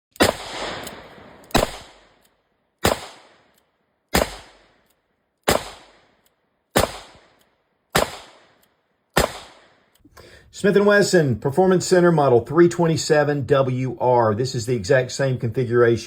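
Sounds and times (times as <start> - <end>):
revolver shots with ringing echo: 0.2 - 2.2, 2.8 - 3.5, 4.1 - 4.8, 5.4 - 8.6, 9.2 - 9.9.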